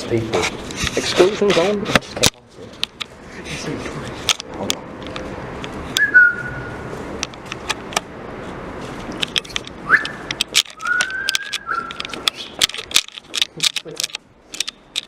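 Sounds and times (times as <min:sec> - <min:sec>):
person whistling: 0:06.0 - 0:06.7, 0:09.9 - 0:10.2, 0:10.8 - 0:12.0
sharp clicks and knocks: 0:07.2 - 0:08.1, 0:09.0 - 0:15.0.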